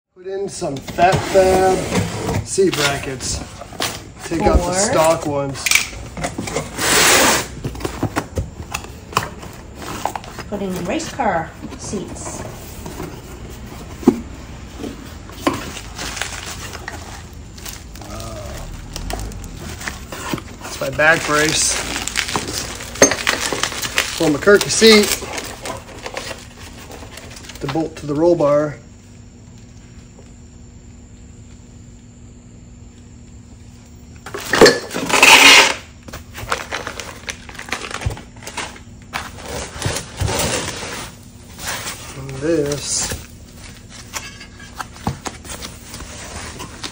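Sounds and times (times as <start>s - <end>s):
low steady rumble: 9.4s - 23.0s
metal parts clanking and rattling: 44.0s - 44.8s.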